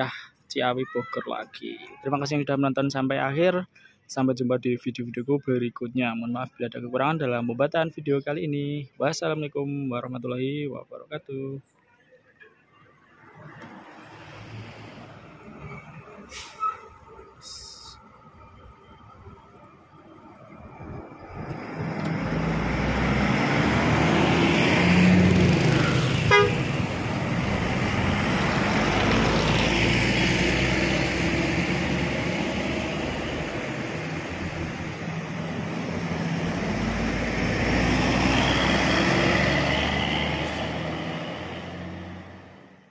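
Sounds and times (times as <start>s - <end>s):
bus engine running: 13.4s - 42.8s.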